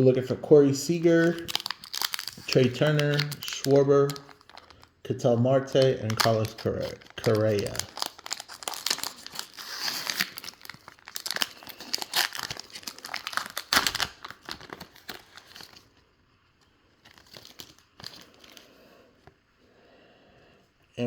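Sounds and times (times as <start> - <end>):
wrapper crinkling and tearing: 0.8 - 5.0, 5.6 - 16.1, 16.9 - 18.9
cards being handled: 0.9 - 4.8, 5.7 - 16.0.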